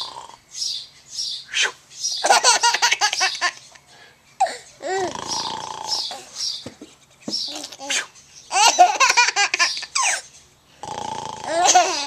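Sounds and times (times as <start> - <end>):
high-pitched laughter: 11.5 - 12.0.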